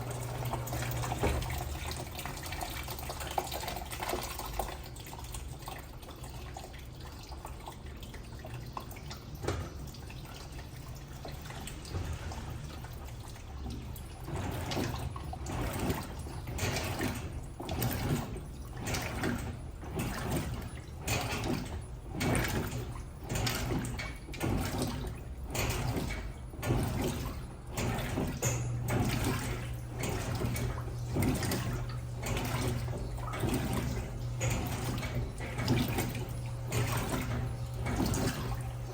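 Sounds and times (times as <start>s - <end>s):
low motor hum: 0.0s - 2.6s, 25.2s - 38.9s
agitator swishing water: 0.0s - 38.9s
water rushing into washing machine: 0.0s - 38.9s.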